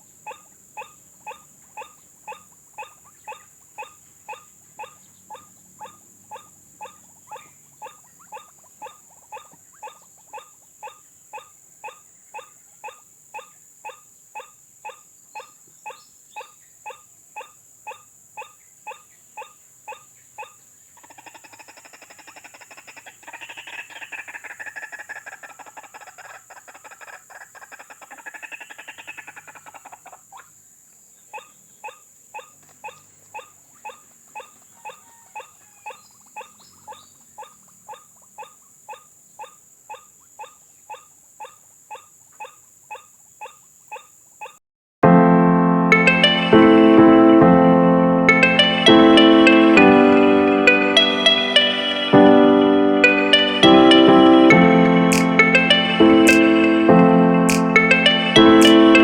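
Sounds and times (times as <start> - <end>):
waterhen calling: 0.0 - 30.6, 31.3 - 44.6.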